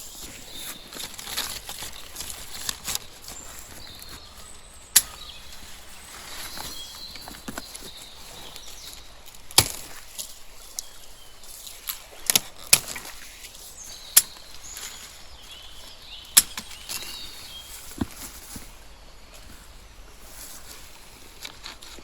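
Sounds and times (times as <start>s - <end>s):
faint bird chirps: 3.2s - 9.2s.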